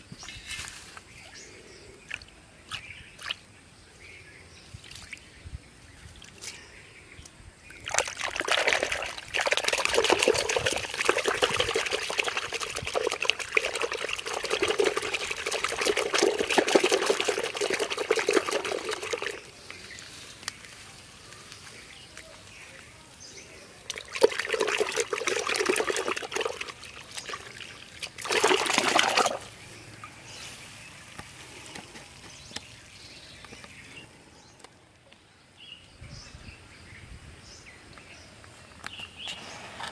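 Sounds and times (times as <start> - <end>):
water pouring and splashing: 7.8 - 19.8, 23.8 - 30.4.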